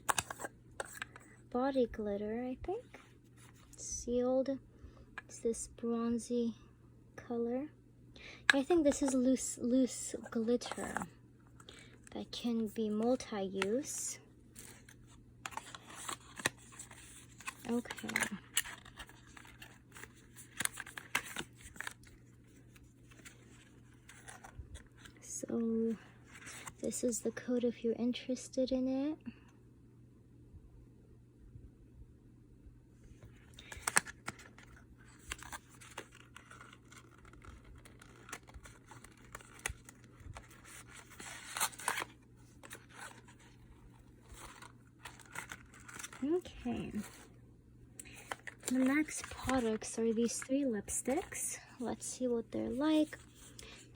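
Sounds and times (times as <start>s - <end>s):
packaging clicks and rustles: 0.0s - 1.4s, 14.6s - 25.2s, 33.4s - 47.3s, 48.0s - 51.4s.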